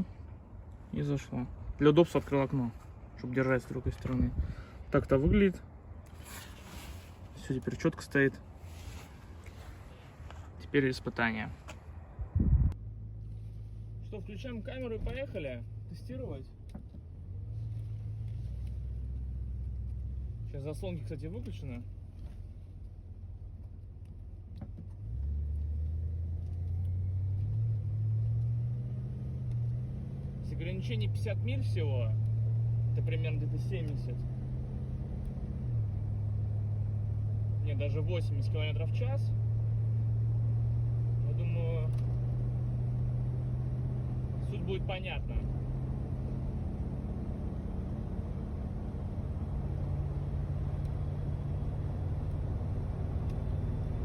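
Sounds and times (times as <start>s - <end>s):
road rumble: 0.0s - 54.0s
van engine accelerating: 12.0s - 54.0s.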